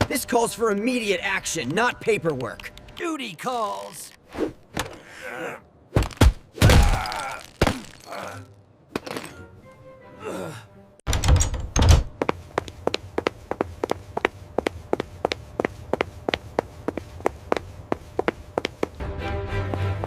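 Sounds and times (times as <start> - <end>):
background music: 8.1 - 11.1, 19.0 - 20.0.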